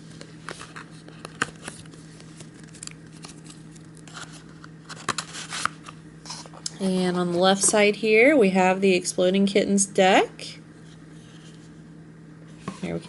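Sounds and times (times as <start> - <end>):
steady low hum: 0.0 - 13.0
paper and card rustling: 0.1 - 7.8.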